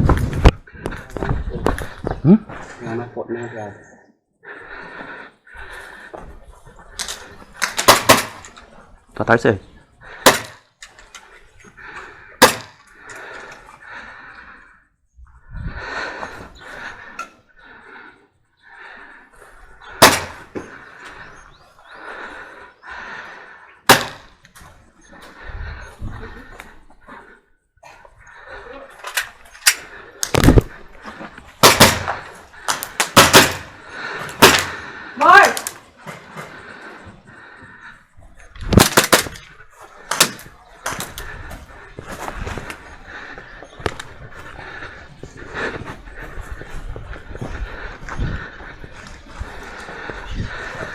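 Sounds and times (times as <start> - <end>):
airsoft guns firing: 7.6 - 8.6, 10.2 - 10.6, 12.4 - 12.8, 20.0 - 20.5, 23.9 - 24.3, 31.6 - 34.8, 38.8 - 39.4, 40.1 - 41.0
airsoft gun shots: 7.7 - 8.4, 12.4 - 12.8, 20.0 - 20.4, 23.9 - 24.3, 31.6 - 32.2, 33.0 - 33.8.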